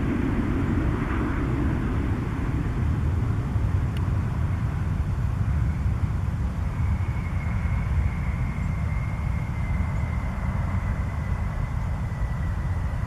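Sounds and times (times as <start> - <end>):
jet engine high whine: 0.0 - 13.0
jet engines low rumble: 0.0 - 13.0.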